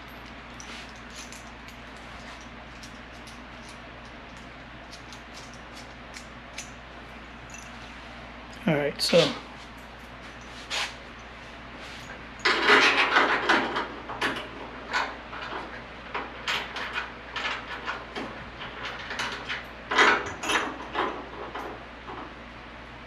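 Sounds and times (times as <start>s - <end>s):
small metal hardware clinking: 0.0s - 6.8s, 7.4s - 7.8s
metal clatter: 12.4s - 22.3s.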